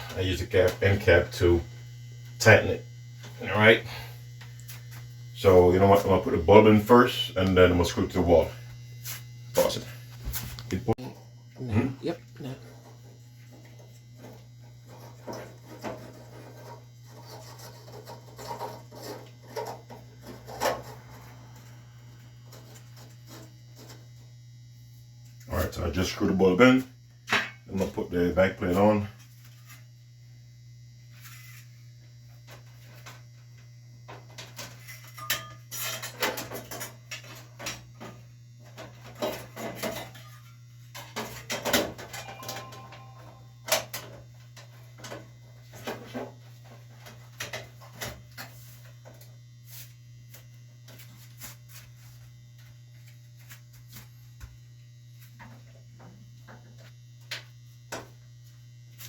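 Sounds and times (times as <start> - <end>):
steady low hum: 0.0 - 59.0
ringing metal strikes: 42.1 - 43.5.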